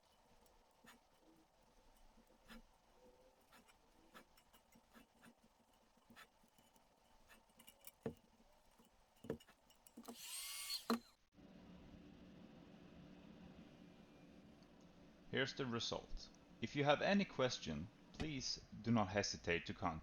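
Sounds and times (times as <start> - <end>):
handling clicks and taps: 7.5 - 10.2.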